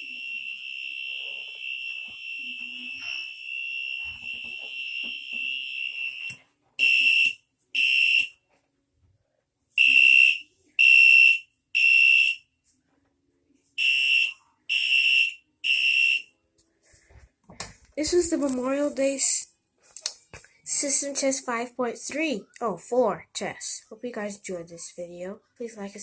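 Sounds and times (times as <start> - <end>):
fire alarm tone: 0.0 - 8.4, 9.8 - 12.5, 13.8 - 16.3.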